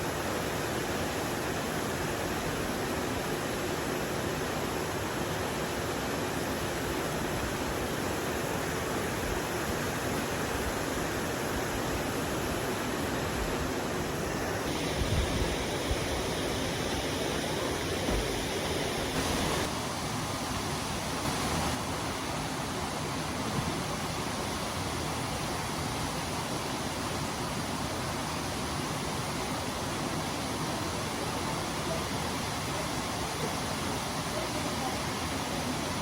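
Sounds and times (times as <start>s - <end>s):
waterfall rushing: 14.6s - 25.4s.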